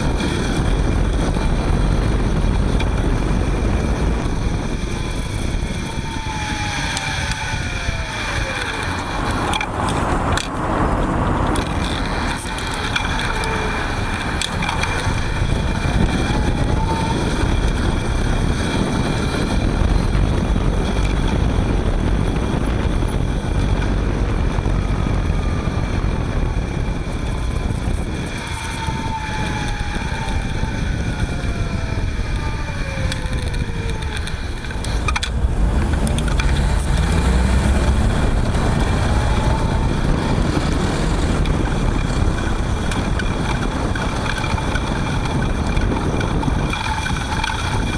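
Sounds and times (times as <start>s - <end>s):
hub motor whine: 0.0s - 47.9s
road and wind noise: 0.0s - 47.9s.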